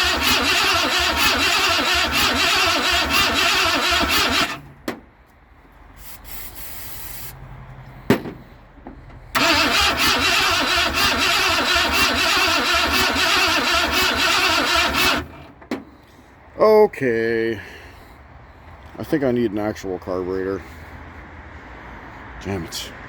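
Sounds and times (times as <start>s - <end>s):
starter cranking engine: 0.0s - 4.8s, 9.3s - 15.6s.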